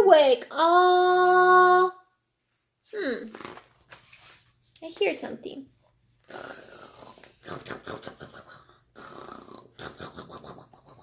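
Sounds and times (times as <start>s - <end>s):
person imitating snoring: 6.3s - 11.0s.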